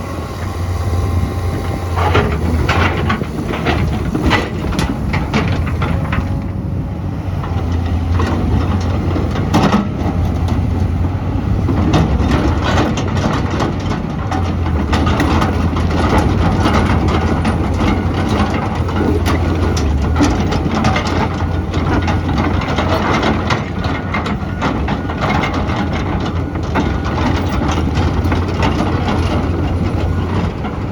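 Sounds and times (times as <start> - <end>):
excavator diesel engine running: 0.0 - 30.9
short knocks and clanks: 1.6 - 6.6.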